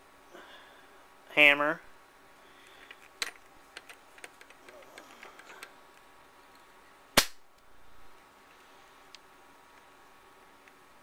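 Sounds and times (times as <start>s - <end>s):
sharp metallic snap: 7.2s - 7.5s.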